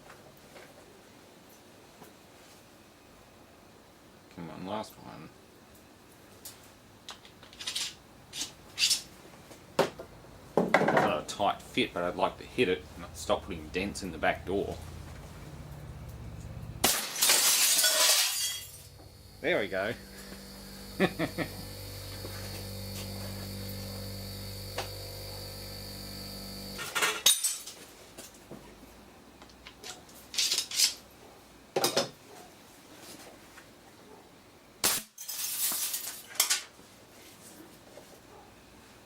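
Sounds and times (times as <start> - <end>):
mechanical hum with tones: 12.2 - 17.0, 18.0 - 27.2.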